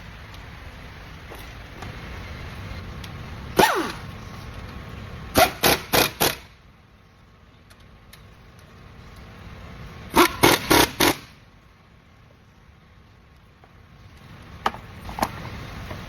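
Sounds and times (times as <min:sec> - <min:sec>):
shop tool bursts: 0:03.6 - 0:04.0, 0:05.3 - 0:06.6, 0:10.1 - 0:11.4.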